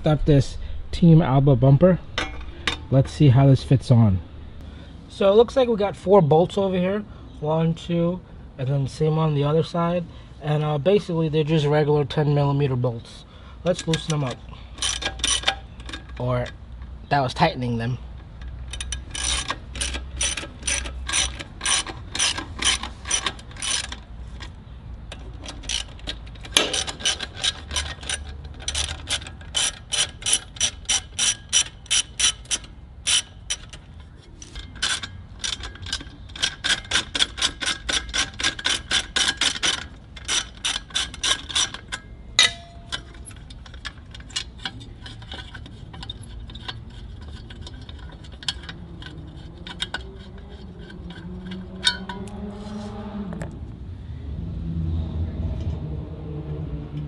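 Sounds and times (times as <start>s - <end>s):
socket ratchet clicking: 18.3s - 24.1s, 25.1s - 52.4s.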